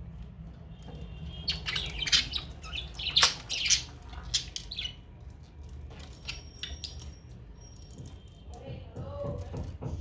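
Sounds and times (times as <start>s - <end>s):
budgerigars chirping and squawking: 1.3s - 5.0s.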